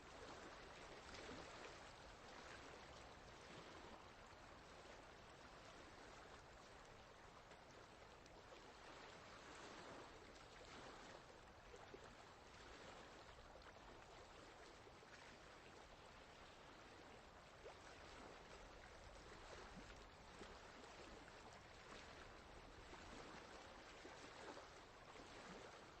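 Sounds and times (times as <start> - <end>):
faint running water: 0.0 - 26.0.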